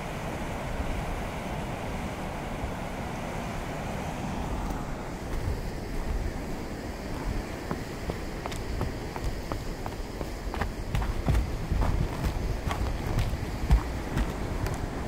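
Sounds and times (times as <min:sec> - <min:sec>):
waterfall roaring: 0:00.0 - 0:15.0
wind buffeting microphone: 0:00.0 - 0:15.0.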